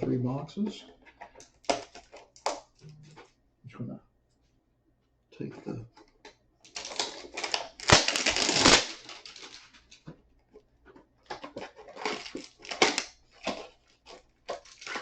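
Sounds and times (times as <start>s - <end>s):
wrapper crinkling and rustling: 6.6s - 10.0s, 11.2s - 15.0s
cardboard box tearing: 6.8s - 9.4s.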